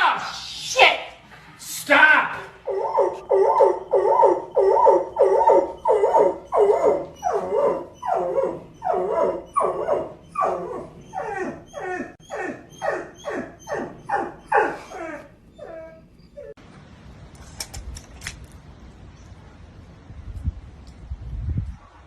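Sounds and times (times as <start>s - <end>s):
dog yelping barks: 2.6s - 16.5s.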